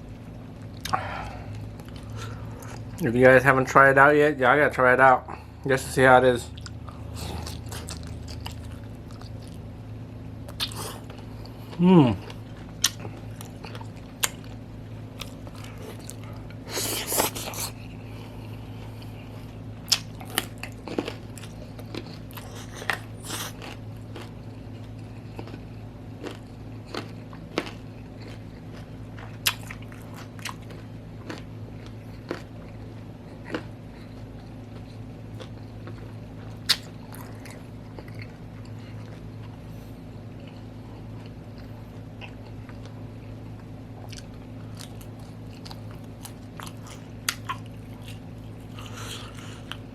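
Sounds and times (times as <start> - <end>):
steady low hum: 0.0 - 49.9
person chewing food: 0.2 - 3.0, 6.5 - 49.9
crunch: 10.4 - 39.6.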